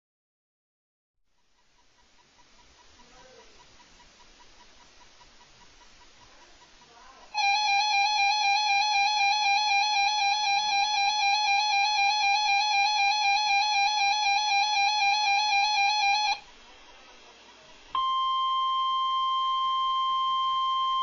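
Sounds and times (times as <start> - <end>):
electronic alert tone: 7.4 - 16.4.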